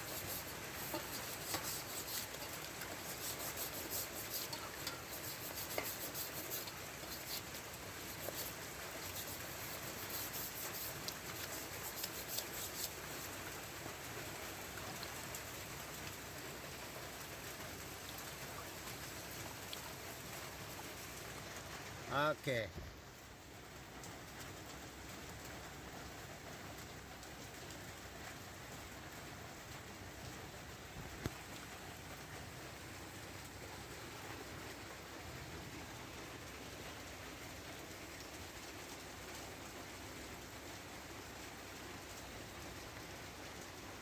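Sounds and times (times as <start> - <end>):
water trickling over knife blade: 0.0 - 13.5, 17.4 - 20.3.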